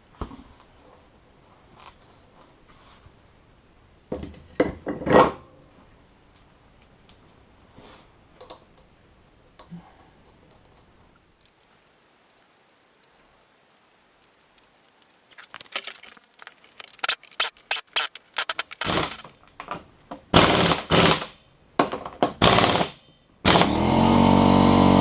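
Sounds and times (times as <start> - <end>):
clattering clicks and knocks: 11.4 - 19.3
loud short bursts: 15.3 - 19.3
small engine running: 23.6 - 25.0.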